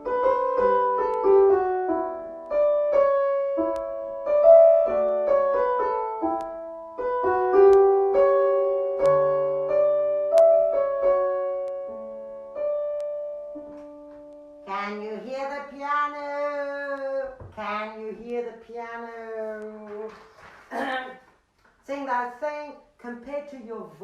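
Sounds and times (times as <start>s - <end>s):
piano playing slow notes and chords: 0.0s - 14.8s.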